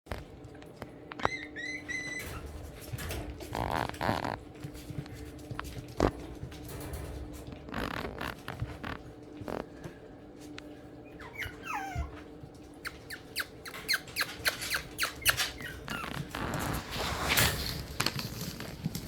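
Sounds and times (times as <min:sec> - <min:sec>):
puppies squeaking and whimpering: 0:01.2 - 0:02.7, 0:10.9 - 0:17.0.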